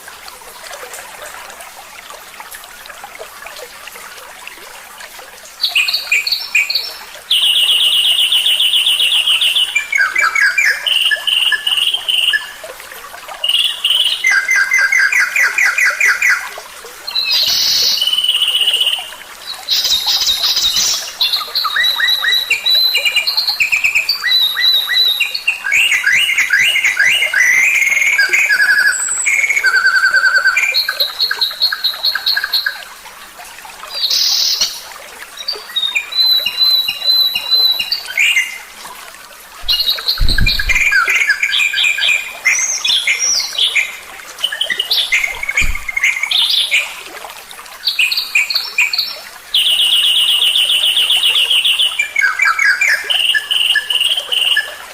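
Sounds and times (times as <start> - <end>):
low thumps: 39.6 - 41.0, 45.2 - 46.0
songbird trills and chirps: 39.6 - 46.9.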